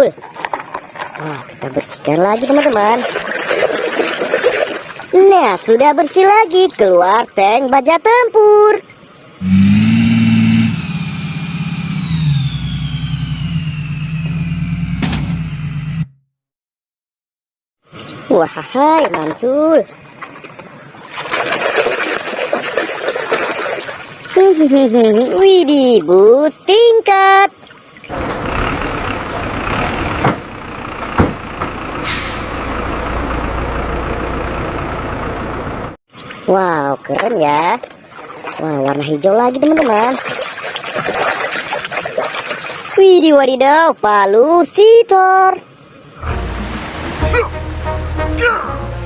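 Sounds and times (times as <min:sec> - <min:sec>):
heavy engine drone: 0:09.4 - 0:16.1, 0:28.1 - 0:36.0, 0:46.2 - 0:49.0
high whine falling in pitch: 0:09.4 - 0:16.1, 0:46.2 - 0:49.0
air brake hiss: 0:32.0 - 0:32.7.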